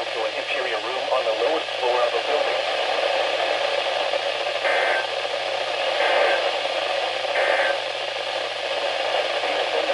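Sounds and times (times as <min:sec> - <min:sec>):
radio static hiss: 0:00.0 - 0:09.9
data tone bursts: 0:04.6 - 0:05.1, 0:07.3 - 0:07.8.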